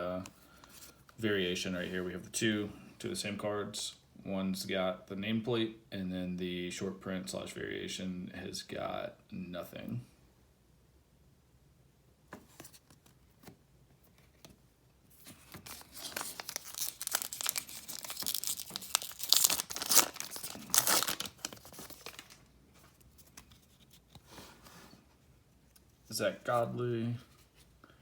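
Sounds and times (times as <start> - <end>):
wrapper tearing and crinkling: 15.5 - 22.5.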